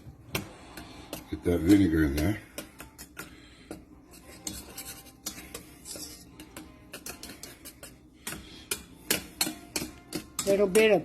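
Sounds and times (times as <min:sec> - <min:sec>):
utensil tapping against a bowl: 0:00.3 - 0:03.8, 0:06.4 - 0:11.0.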